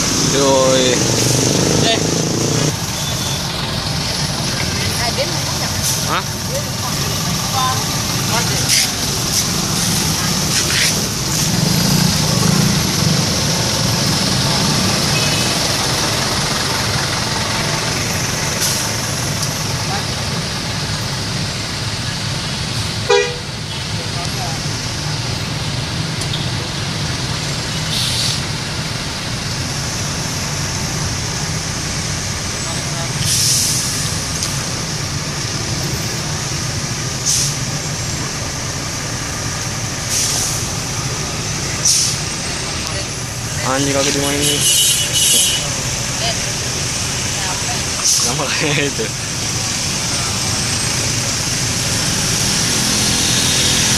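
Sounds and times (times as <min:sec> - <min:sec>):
bus engine idling: 0:00.0 - 0:52.8
traffic hiss: 0:00.0 - 0:53.9
air brake hiss: 0:27.9 - 0:28.4, 0:33.2 - 0:34.2, 0:37.2 - 0:37.6, 0:40.1 - 0:40.7, 0:41.8 - 0:42.2.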